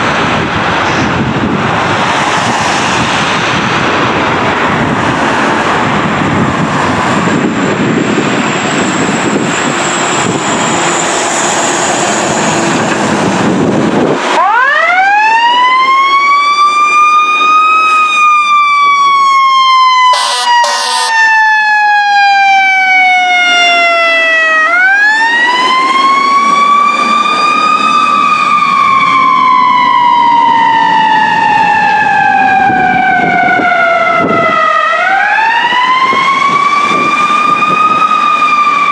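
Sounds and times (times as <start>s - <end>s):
fire engine siren wailing: 14.2s - 38.9s
brief horn blasts: 20.1s - 21.2s.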